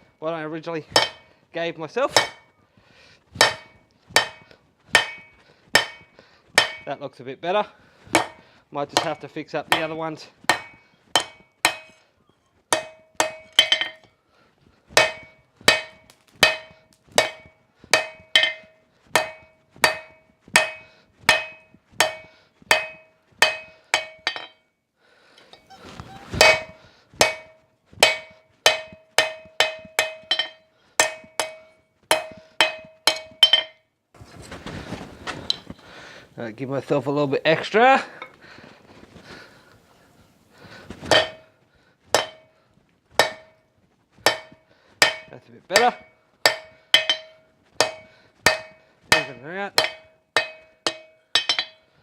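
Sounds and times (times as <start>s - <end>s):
hammer ringing on anvil: 1.0s - 1.2s, 3.4s - 6.9s, 10.5s - 12.0s, 12.7s - 14.1s, 15.0s - 24.6s, 26.4s - 33.8s, 42.2s - 42.5s, 44.3s - 51.9s.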